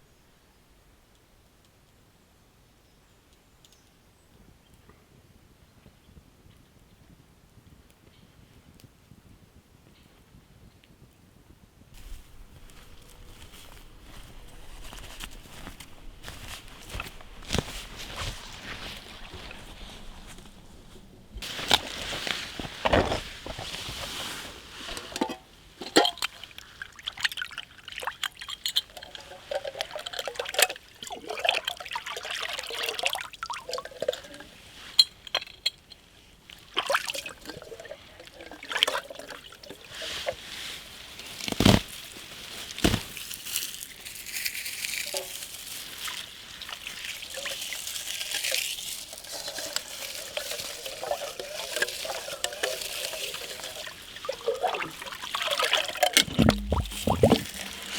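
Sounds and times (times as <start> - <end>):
camp gear clicks and knocks: 12.0 - 26.5, 41.3 - 42.1, 55.8 - 57.9
water pouring and trickling: 12.0 - 35.0, 36.5 - 57.9.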